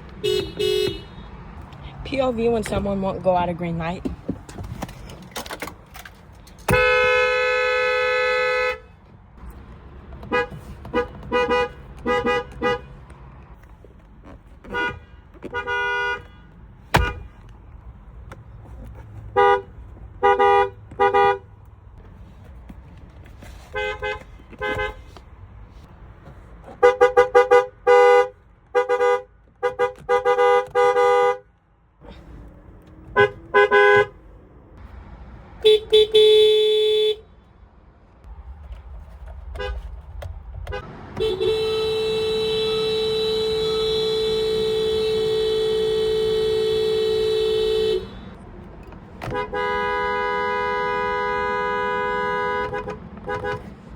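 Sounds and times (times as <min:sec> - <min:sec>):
car horn honking: 0:00.0 - 0:01.6, 0:06.6 - 0:09.1, 0:10.2 - 0:13.1, 0:14.6 - 0:17.4, 0:19.3 - 0:21.6, 0:23.7 - 0:25.2, 0:26.7 - 0:31.5, 0:32.9 - 0:34.4, 0:35.6 - 0:37.4, 0:39.6 - 0:39.9, 0:40.7 - 0:48.4, 0:49.2 - 0:53.7.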